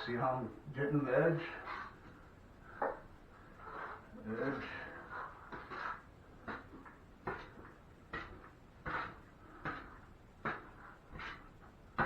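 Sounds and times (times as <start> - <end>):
drywall knife scraping compound: 1.4 - 2.0, 3.5 - 12.0.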